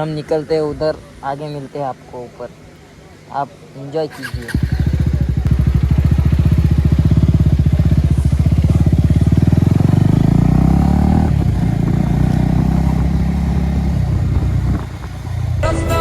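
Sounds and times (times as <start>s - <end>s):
motorcycle engine putter: 4.1s - 9.6s.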